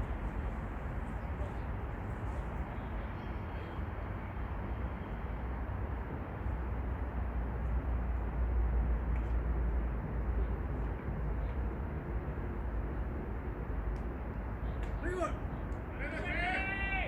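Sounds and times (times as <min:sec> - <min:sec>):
low outdoor rumble: 0:00.0 - 0:05.0.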